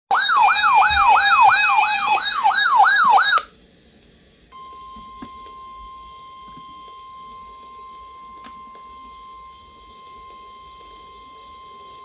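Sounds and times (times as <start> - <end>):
electronic siren sweeping: 0.1 - 3.5
steady alarm tone: 0.1 - 3.5.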